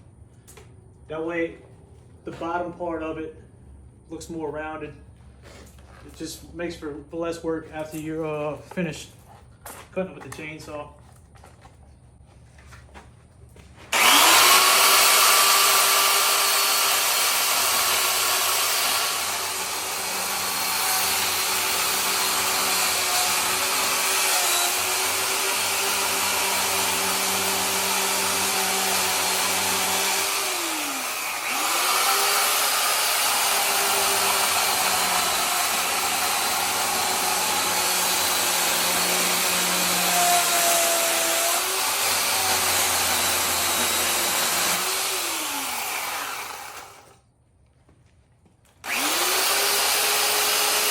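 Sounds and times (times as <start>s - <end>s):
electric chainsaw cutting wood: 13.9s - 47.2s, 48.8s - 50.9s.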